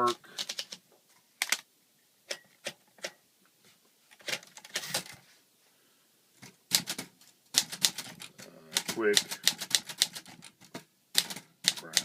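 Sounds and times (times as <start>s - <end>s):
typewriter keys clacking: 0.4s - 0.8s, 6.7s - 12.0s.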